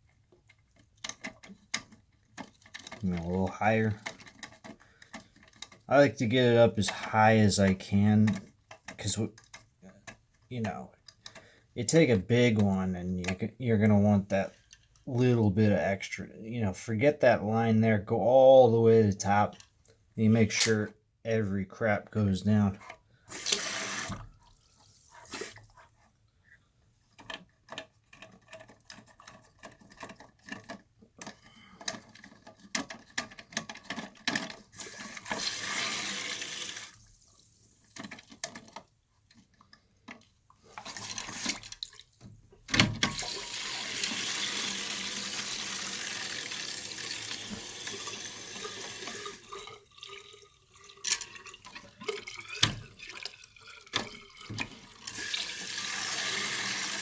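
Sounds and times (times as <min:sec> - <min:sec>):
water hissing into toilet tank: 0:23.2 - 0:25.8, 0:34.7 - 0:37.6, 0:43.1 - 0:50.7, 0:51.4 - 0:57.0
water drips: 0:46.6 - 0:55.9.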